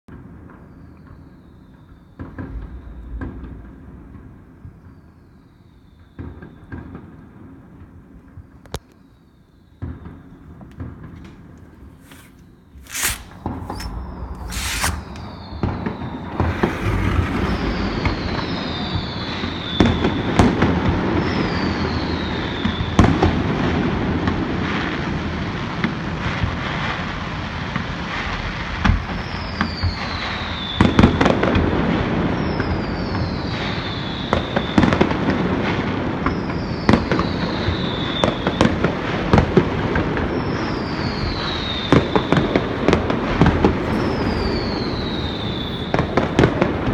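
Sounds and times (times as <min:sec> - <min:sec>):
fireworks rumble and crackle: 0:00.1 - 0:46.9
fireworks sharp bangs: 0:11.9 - 0:21.7, 0:34.5 - 0:46.9
falling firework whistles: 0:11.9 - 0:23.7, 0:29.1 - 0:46.9.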